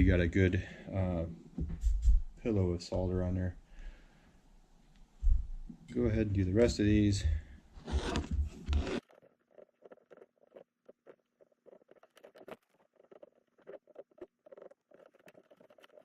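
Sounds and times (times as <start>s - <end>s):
solder crackling and popping: 7.8s - 16.0s.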